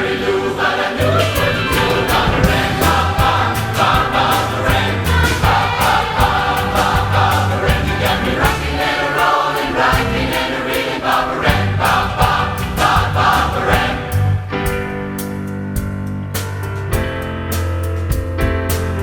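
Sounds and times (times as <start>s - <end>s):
choir singing in harmony: 0.0s - 14.6s
band with a steady beat: 1.0s - 19.0s.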